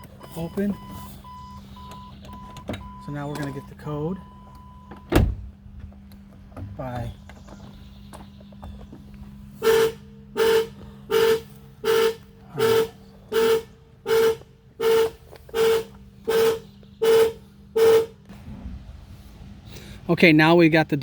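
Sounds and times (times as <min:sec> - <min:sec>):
car horn honking: 0:00.0 - 0:05.5, 0:07.8 - 0:18.3.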